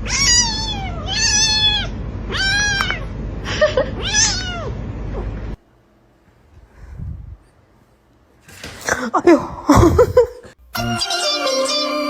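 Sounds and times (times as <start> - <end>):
cat meowing: 0.0 - 3.1, 4.0 - 5.3
low background rumble: 0.0 - 5.6.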